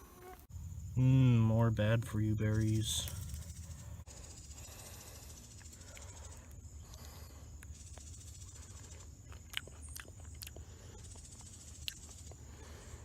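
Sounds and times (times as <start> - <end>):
insects hissing: 0.0 - 9.2.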